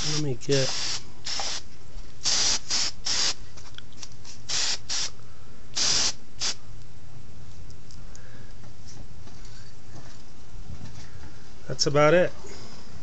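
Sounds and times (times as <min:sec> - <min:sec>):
spray paint can hissing: 0:00.0 - 0:01.6, 0:02.2 - 0:03.4, 0:04.5 - 0:05.1, 0:05.8 - 0:06.6.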